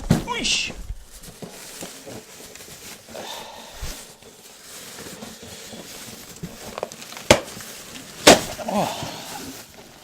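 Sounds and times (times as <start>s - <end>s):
cardboard packaging rustling: 0.0s - 10.0s.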